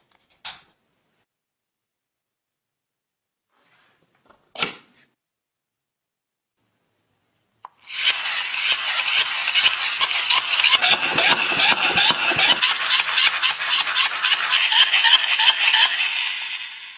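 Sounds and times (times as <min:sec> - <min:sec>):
dynamo flashlight whirring: 0:07.7 - 0:16.9.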